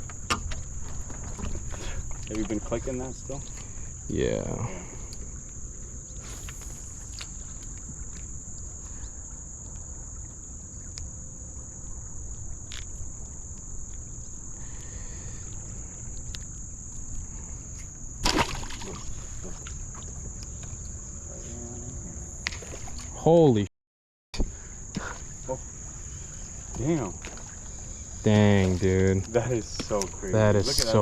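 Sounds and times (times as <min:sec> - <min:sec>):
insects droning: 0:00.0 - 0:23.7, 0:24.4 - 0:31.0
fish splashing in water: 0:18.2 - 0:20.1.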